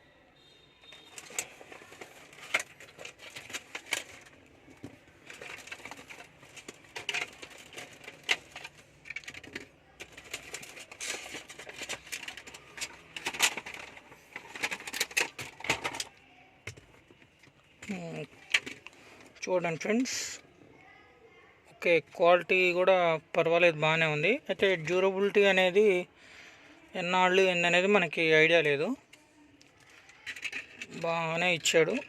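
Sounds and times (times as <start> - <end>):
packaging crackling and rustling: 0.8 - 20.1, 29.6 - 32.0.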